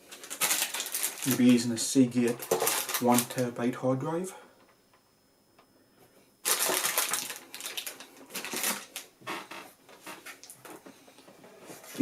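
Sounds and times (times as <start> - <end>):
packaging crinkling and rustling: 0.0 - 3.5, 6.4 - 10.8.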